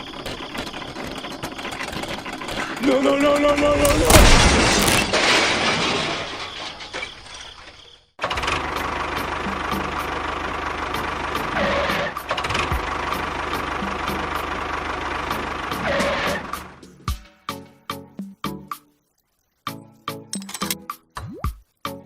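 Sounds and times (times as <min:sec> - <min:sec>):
machine running with clicks: 0:00.0 - 0:04.2.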